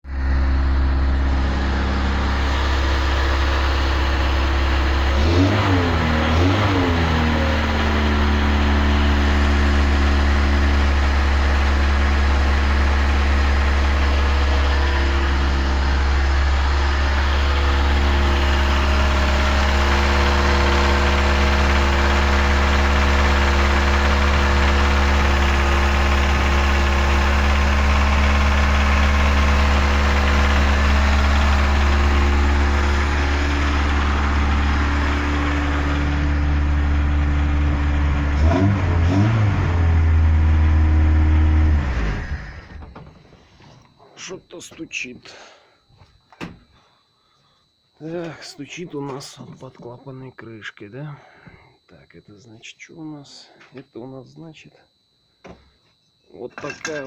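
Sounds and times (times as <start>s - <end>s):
engine knocking: 0.0s - 42.6s
car engine idling: 0.0s - 43.5s.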